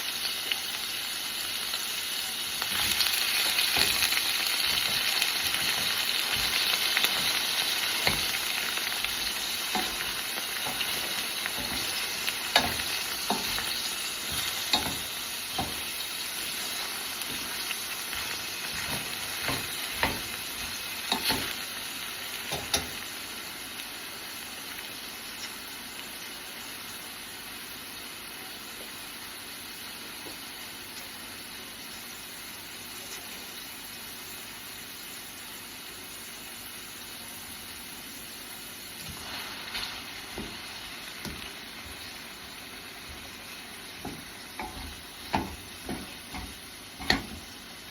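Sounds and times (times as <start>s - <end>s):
food sizzling in a frying pan: 0.0s - 47.9s
utensil knocking against pan: 44.0s - 47.4s.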